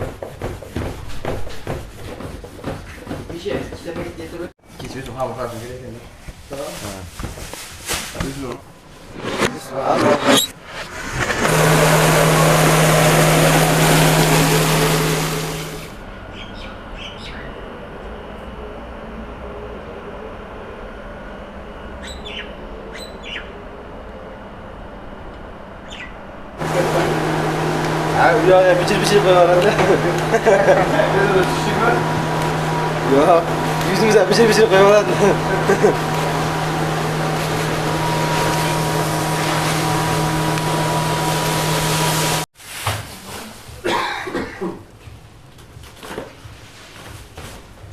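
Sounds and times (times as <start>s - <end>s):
machine low hum: 8.4s - 16.9s, 23.5s - 42.5s
rushing noise: 8.9s - 16.0s.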